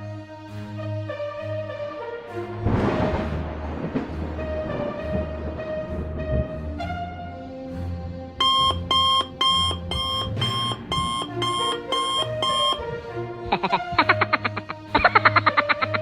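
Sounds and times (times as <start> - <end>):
background music: 0.0 - 16.0
alarm clock beeping: 8.4 - 12.8.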